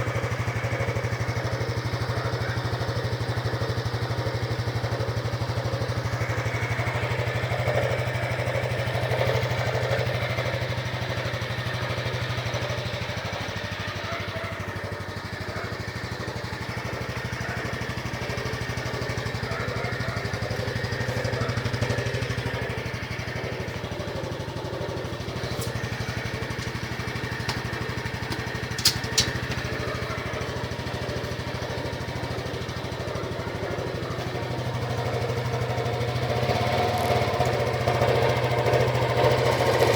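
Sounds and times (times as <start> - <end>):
motorcycle engine idling: 0.0 - 39.9
sharp clicks: 28.3 - 29.7.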